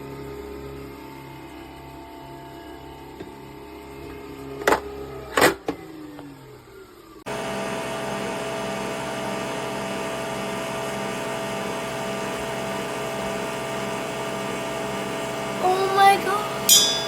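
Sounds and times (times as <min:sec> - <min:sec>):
coffee machine whirring: 0:06.7 - 0:17.0.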